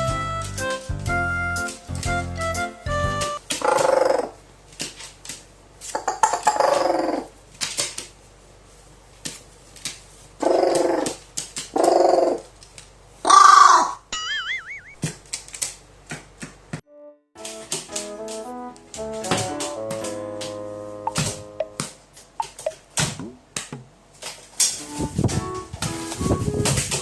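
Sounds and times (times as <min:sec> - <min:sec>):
warbling electronic tone: 0:14.2 - 0:15.0.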